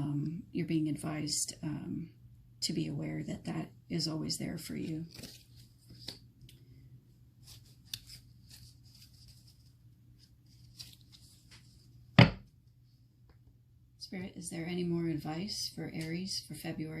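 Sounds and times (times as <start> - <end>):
cards rustling and clicking: 5.1 - 6.6, 7.4 - 11.8
loud short thump: 12.2 - 12.4.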